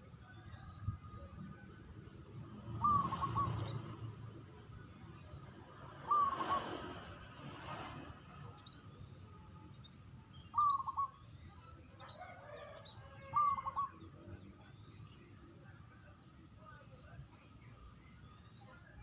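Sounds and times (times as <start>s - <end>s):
small birds chirping: 0.0s - 19.0s
dove cooing: 2.8s - 4.0s, 6.0s - 6.9s, 10.5s - 11.2s, 12.2s - 14.0s.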